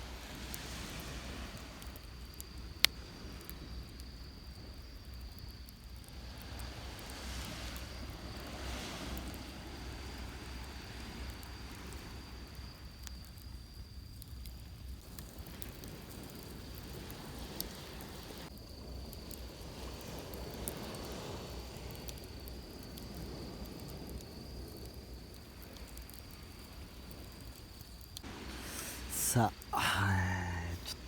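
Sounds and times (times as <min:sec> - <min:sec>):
surf washing on beach: 0:00.0 - 0:02.0, 0:06.1 - 0:12.6, 0:28.2 - 0:31.0
campfire crackling and popping: 0:00.1 - 0:31.0
high insect trill: 0:00.1 - 0:31.0.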